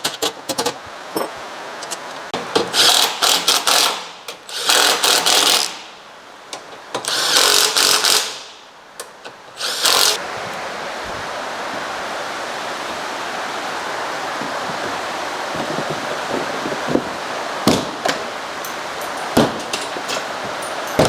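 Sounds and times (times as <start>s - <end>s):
power driver running bolts: 2.6s - 5.8s, 7.0s - 8.5s, 9.6s - 10.2s
metal parts clicking: 18.1s - 21.0s.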